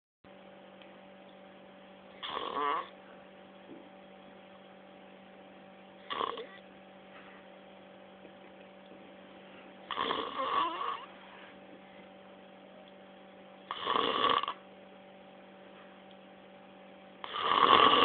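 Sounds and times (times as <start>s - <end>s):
steady low hum: 0.3s - 18.0s
person snoring loudly: 2.2s - 3.0s, 6.1s - 6.6s, 9.9s - 11.1s, 13.7s - 14.6s, 17.2s - 18.0s.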